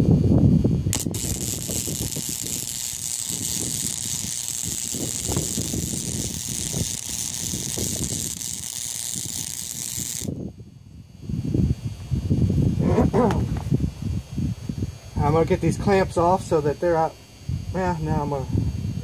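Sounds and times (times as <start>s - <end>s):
arc welding hiss and crackle: 0.9s - 10.5s, 15.1s - 18.5s.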